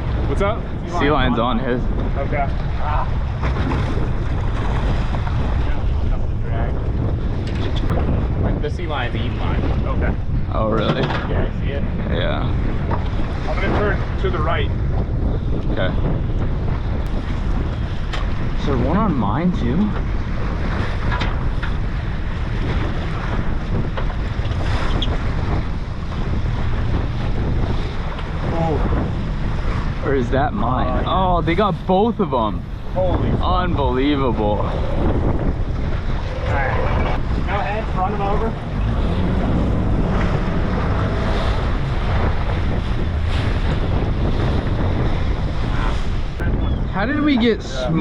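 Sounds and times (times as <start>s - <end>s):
water washing around boat: 0.0s - 48.0s
wind buffeting microphone: 0.0s - 48.0s.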